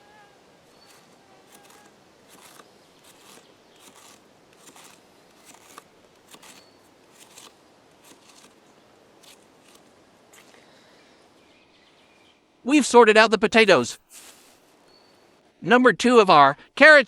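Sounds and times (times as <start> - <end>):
knife cutting potatoes: 0.9 - 8.6.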